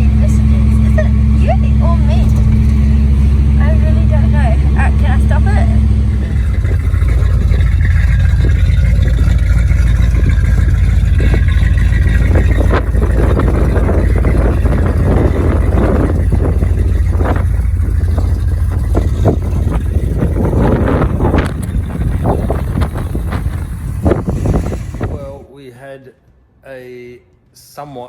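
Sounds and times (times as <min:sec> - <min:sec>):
car engine and road drone: 0:00.0 - 0:25.5
rattles and short knocks: 0:00.3 - 0:25.3.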